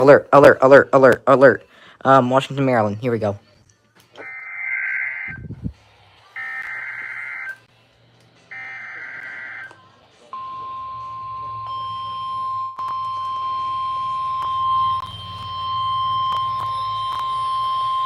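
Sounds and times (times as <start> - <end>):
digital data tone bursts: 4.2 - 5.5.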